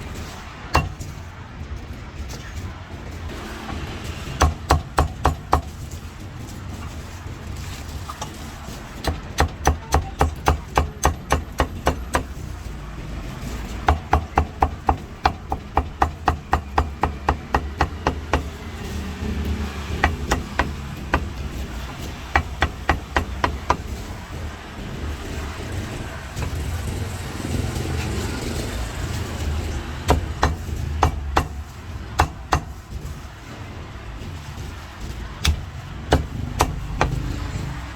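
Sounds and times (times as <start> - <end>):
cleaver chopping meat: 9.0 - 12.4, 13.5 - 24.2, 29.3 - 33.2, 34.6 - 37.8.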